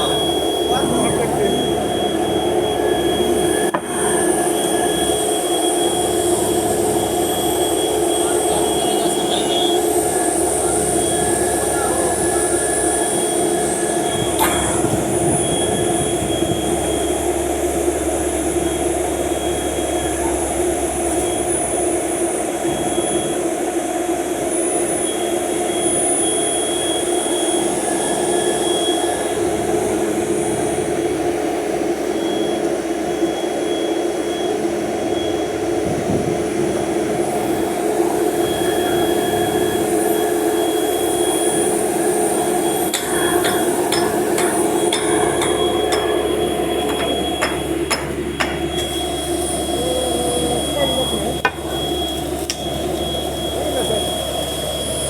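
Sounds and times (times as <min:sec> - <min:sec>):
machine humming and whining: 0:00.0 - 0:55.0
sharp metallic knocks: 0:14.3 - 0:15.3, 0:42.9 - 0:49.2.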